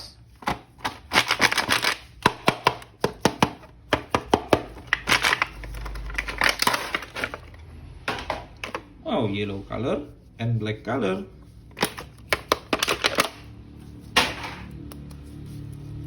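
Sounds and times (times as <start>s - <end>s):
plastic packaging crinkling: 0.8s - 2.4s, 4.7s - 7.7s, 11.7s - 13.6s.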